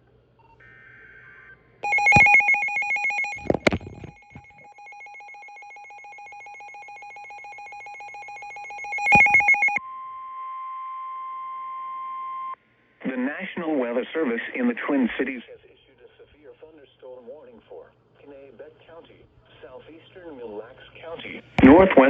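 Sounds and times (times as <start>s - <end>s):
pulsing electronic alarm: 1.8s - 9.8s
steady warning alarm tone: 1.8s - 9.8s.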